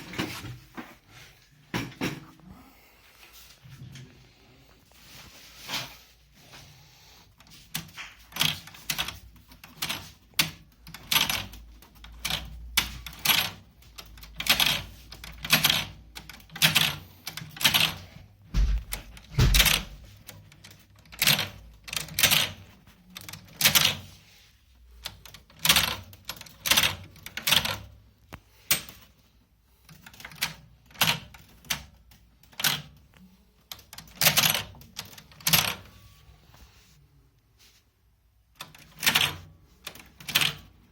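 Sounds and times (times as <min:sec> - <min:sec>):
hard objects clacking and knocking: 0:18.6 - 0:20.0
heavy low thump: 0:18.6 - 0:20.0.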